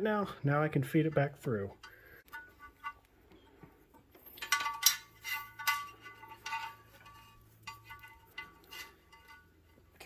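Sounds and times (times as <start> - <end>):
steel cable rattling on metal frame: 3.9 - 10.0.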